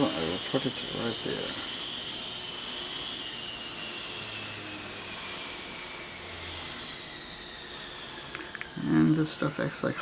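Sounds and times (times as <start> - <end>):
high machine whine: 0.0 - 10.0.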